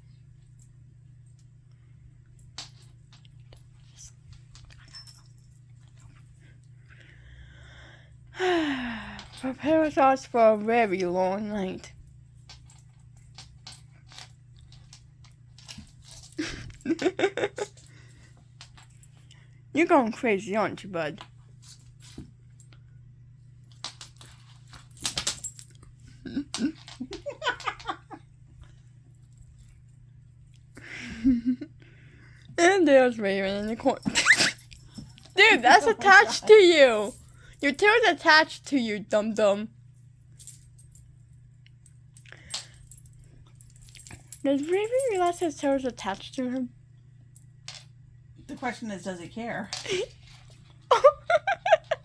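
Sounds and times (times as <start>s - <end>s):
steady low hum: 0.0s - 52.0s.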